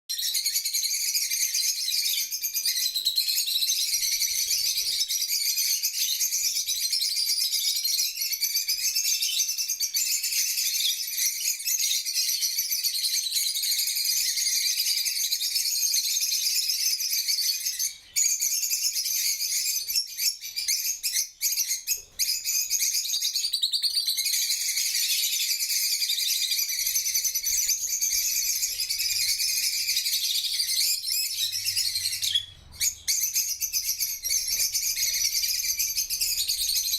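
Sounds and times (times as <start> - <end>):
flock of birds chattering: 24.2 - 36.9.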